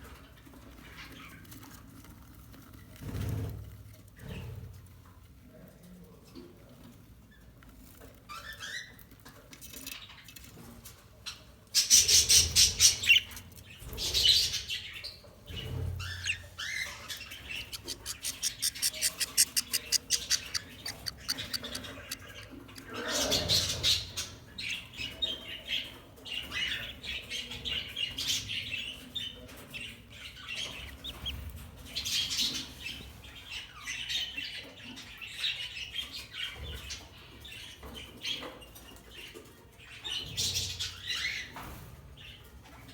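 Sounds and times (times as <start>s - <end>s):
budgerigar chicks squawking: 11.8s - 24.5s, 30.4s - 33.0s.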